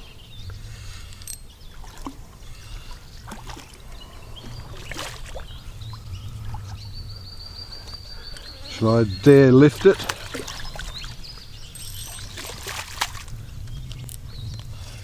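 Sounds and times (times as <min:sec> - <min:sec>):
water dribbling: 0:01.2 - 0:06.8, 0:09.2 - 0:13.4
fish splashing in water: 0:02.9 - 0:05.6, 0:09.6 - 0:11.2, 0:12.0 - 0:13.3.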